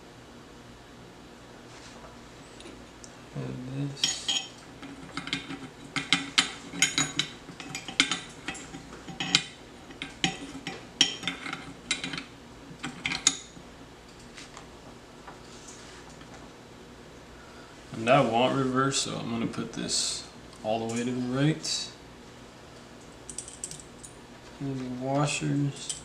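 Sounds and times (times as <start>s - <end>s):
small metal parts clinking: 4.0s - 12.2s, 23.3s - 24.2s.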